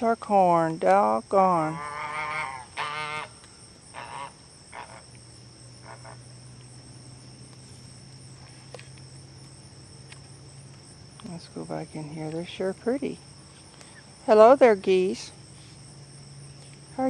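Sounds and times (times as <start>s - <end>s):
high-pitched insect chorus: 0.0s - 17.0s
geese honking: 1.6s - 5.2s, 5.8s - 6.4s.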